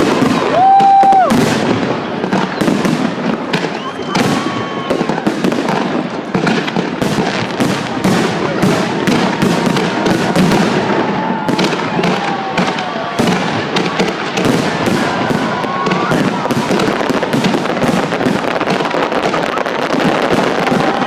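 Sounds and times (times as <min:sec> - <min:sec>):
fireworks bangs and crackles: 0:00.0 - 0:21.0.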